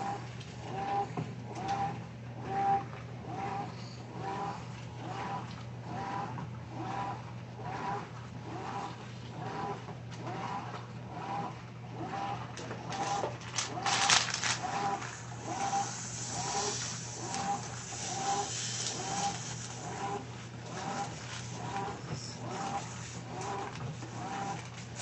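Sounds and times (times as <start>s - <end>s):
washing machine motor hum: 0.0s - 25.0s
washing machine squeak: 20.8s - 23.0s.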